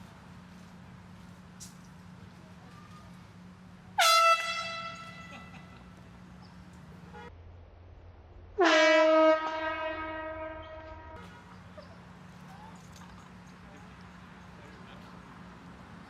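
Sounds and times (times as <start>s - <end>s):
handheld air horn blasts: 4.0s - 5.5s, 8.6s - 11.2s.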